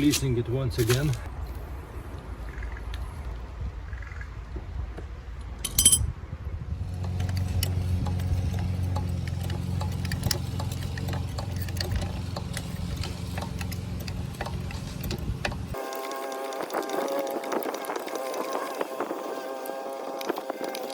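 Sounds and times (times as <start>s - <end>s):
metal parts clicking: 5.6s - 6.1s, 7.2s - 16.1s
sharp metallic clink: 5.6s - 6.1s.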